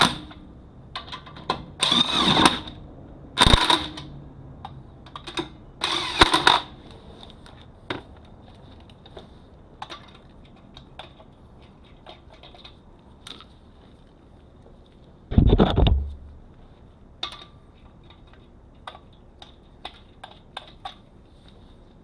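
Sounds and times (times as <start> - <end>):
lug nuts clicking and clinking: 9.8 - 13.4, 17.2 - 21.2.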